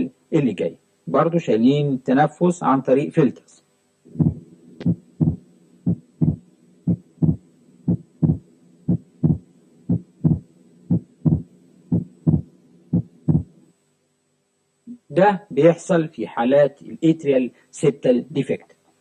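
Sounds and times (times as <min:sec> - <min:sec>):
heartbeat lub-dub: 0:04.1 - 0:13.6.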